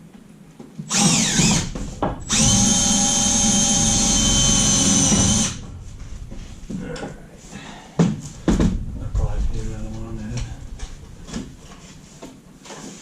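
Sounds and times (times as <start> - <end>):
cordless drill driving screws: 0.9 - 5.6.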